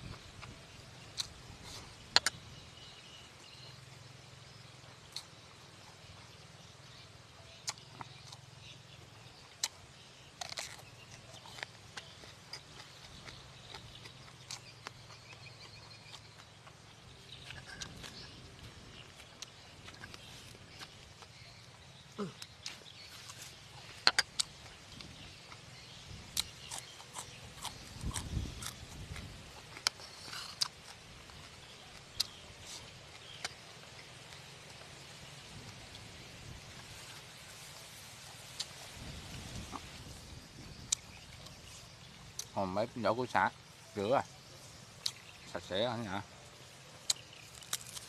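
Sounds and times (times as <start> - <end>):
chewing crispy skin crunches: 7.5 - 36.1, 44.0 - 46.2, 46.9 - 48.0.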